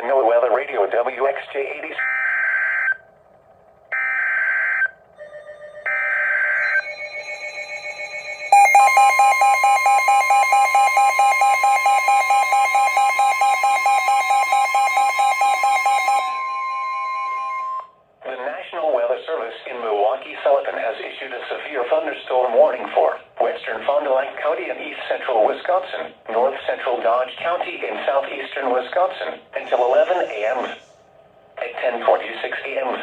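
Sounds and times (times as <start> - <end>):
steady alarm tone: 2.0 - 3.0, 3.9 - 18.0, 29.6 - 31.0
rapidly pulsing electronic beep: 5.9 - 17.9, 29.6 - 30.9.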